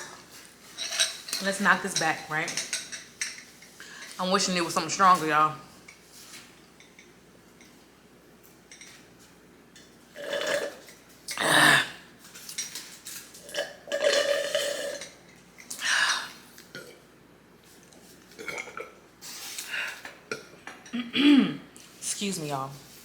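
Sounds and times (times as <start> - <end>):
woman burping: 11.3 - 12.1, 20.3 - 21.7.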